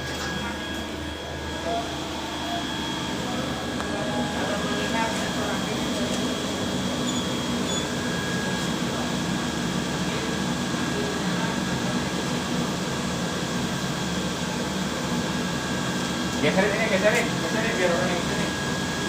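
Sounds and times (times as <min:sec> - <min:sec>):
faint high whine: 0:00.0 - 0:11.5
boiler blower drone: 0:00.0 - 0:19.0.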